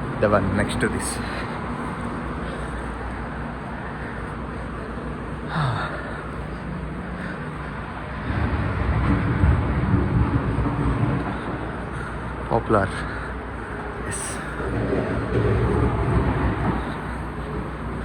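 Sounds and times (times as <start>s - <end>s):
street traffic: 0.0s - 18.0s
vehicle passing with low rumble: 0.0s - 18.0s.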